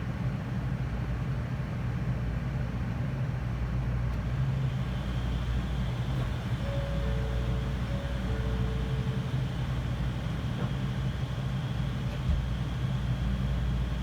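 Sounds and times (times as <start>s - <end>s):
train interior low rumble: 0.0s - 14.0s
two faint steady tones: 6.3s - 10.6s.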